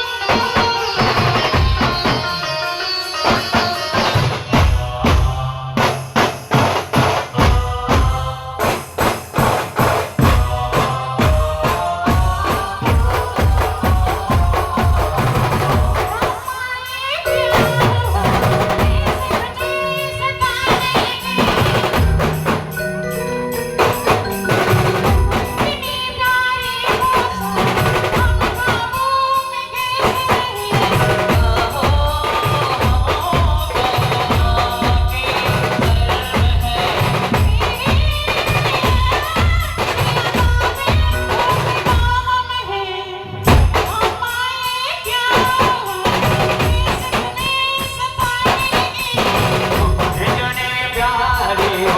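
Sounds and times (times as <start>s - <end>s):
fast dense drumming: 4.2s - 16.6s, 17.3s - 29.0s, 30.0s - 42.2s, 45.3s - 51.9s
band playing loudly: 17.2s - 29.0s, 30.0s - 41.9s, 48.4s - 51.9s
wavering held melody notes: 17.3s - 28.9s.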